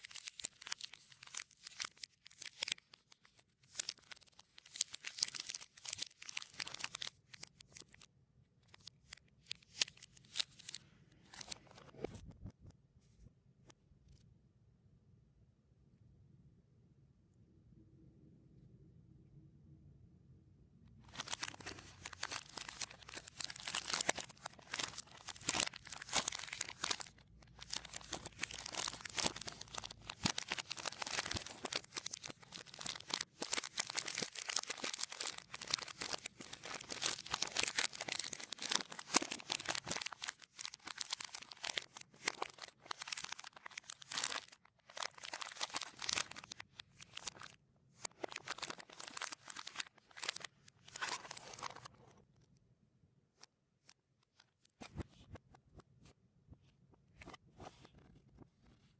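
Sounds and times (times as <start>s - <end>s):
reversed plastic wrappers crinkling: 0.0s - 12.1s, 21.0s - 52.0s.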